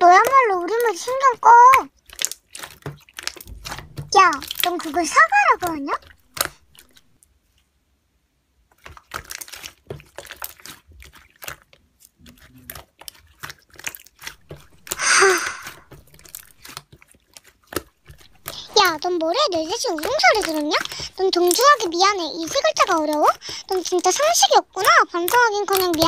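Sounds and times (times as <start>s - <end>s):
breathy burst: 14.9s - 15.9s.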